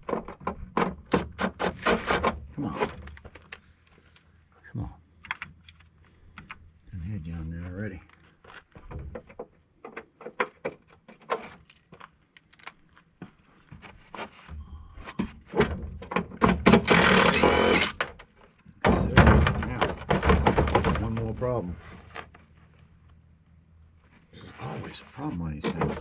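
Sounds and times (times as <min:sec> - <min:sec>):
metal rattling and scraping: 0:15.1 - 0:22.8, 0:24.4 - 0:26.0.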